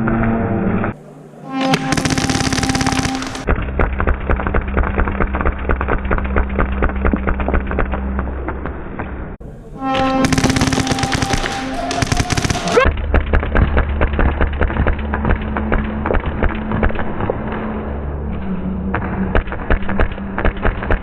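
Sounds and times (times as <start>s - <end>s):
short piece with held tones: 1.0s - 3.5s
music with rapid clicks: 1.7s - 8.3s, 10.2s - 17.6s.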